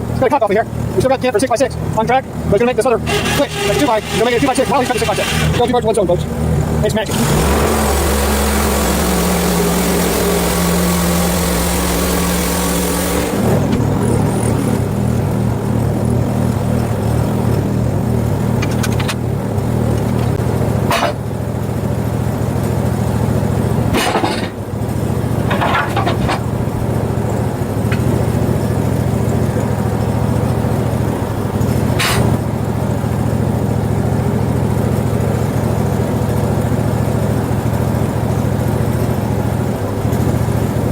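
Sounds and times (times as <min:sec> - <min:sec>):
small gasoline engine running: 0:01.8 - 0:40.9
sharp metal clanks: 0:03.0 - 0:05.7, 0:20.9 - 0:21.2, 0:32.0 - 0:32.4.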